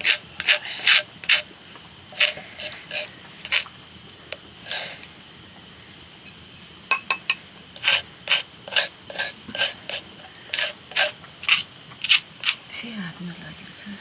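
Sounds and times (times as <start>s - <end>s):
rhythmic rasping scrapes: 7.8s - 12.6s.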